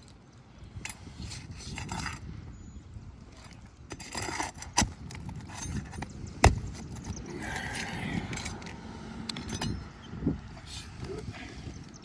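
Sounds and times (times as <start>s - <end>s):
hand tool scraping roof shingles: 3.9s - 7.8s.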